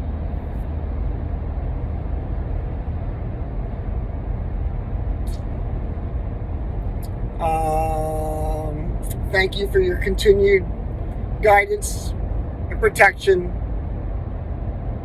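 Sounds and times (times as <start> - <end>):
low background rumble: 0.0 - 15.0
man talking: 7.4 - 10.6, 11.4 - 12.1, 12.7 - 13.5.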